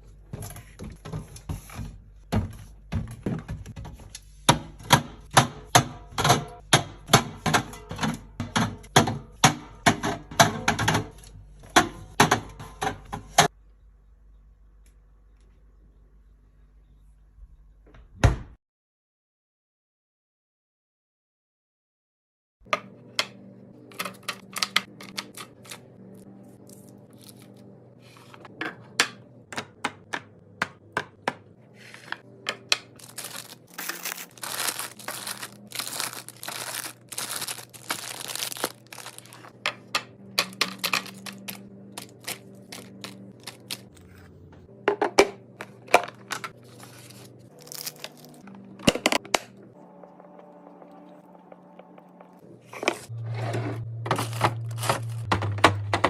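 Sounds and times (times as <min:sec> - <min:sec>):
items tapping and clicking: 0:00.3 - 0:13.5, 0:22.7 - 0:25.8, 0:28.4 - 0:44.0, 0:54.1 - 0:56.0
plastic packaging crinkling: 0:26.7 - 0:27.6, 0:33.0 - 0:39.6, 0:40.5 - 0:44.0, 0:46.6 - 0:48.4, 0:54.1 - 0:55.3.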